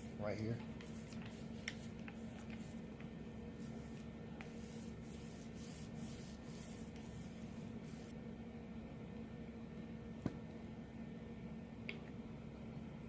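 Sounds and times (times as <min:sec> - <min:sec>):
rubbing resin into cloth: 0:00.0 - 0:02.9, 0:03.5 - 0:08.1
steady low hum: 0:00.0 - 0:13.0.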